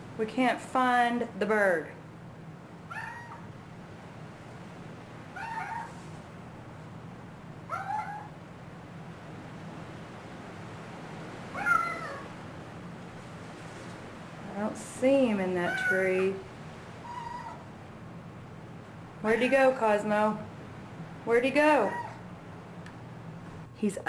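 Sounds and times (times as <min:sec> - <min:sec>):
cat meowing: 0:02.9 - 0:03.5, 0:05.4 - 0:06.0, 0:07.7 - 0:08.3, 0:11.5 - 0:12.3, 0:15.7 - 0:16.0, 0:17.0 - 0:17.6, 0:21.8 - 0:22.2.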